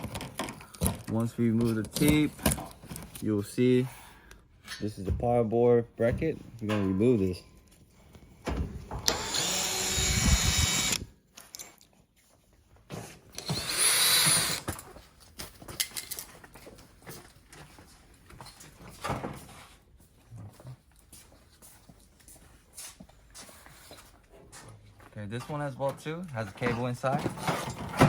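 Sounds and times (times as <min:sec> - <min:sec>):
power screwdriver motor whine: 0:09.0 - 0:11.1, 0:13.4 - 0:14.6.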